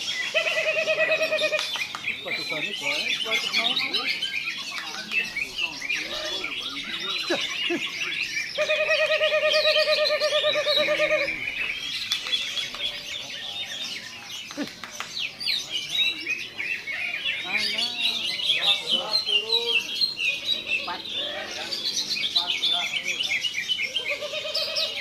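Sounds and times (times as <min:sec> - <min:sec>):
bird singing chirps and whistles: 0:00.0 - 0:14.4.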